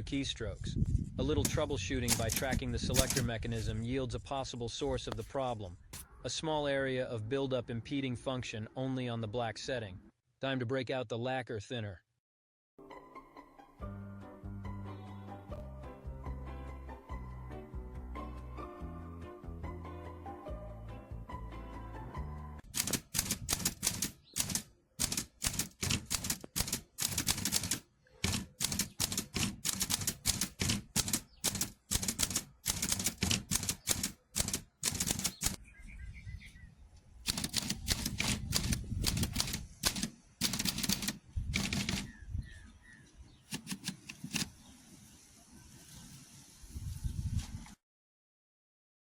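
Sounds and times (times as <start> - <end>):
manual typewriter clatter: 1.4 - 3.3, 22.7 - 35.6, 37.3 - 42.1, 43.5 - 44.5.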